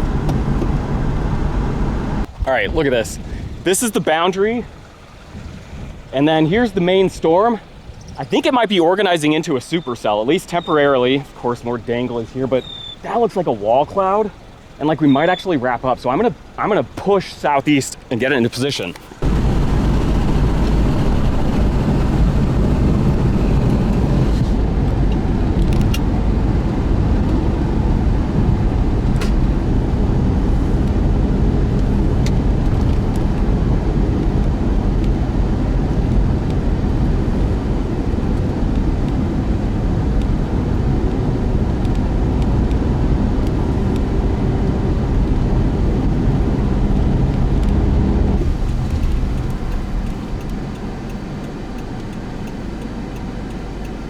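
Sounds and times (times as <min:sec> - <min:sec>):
car engine hum: 0:00.0 - 0:02.3, 0:18.9 - 0:54.0
tyre and road noise: 0:00.0 - 0:03.6, 0:16.4 - 0:54.0
sharp clicks: 0:48.7 - 0:54.0.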